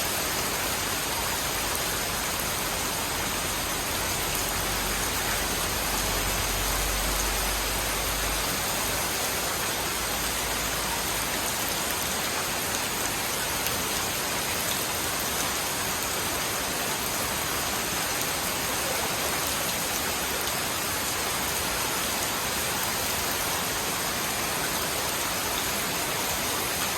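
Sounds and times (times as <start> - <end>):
rain pattering: 0.0 - 26.9.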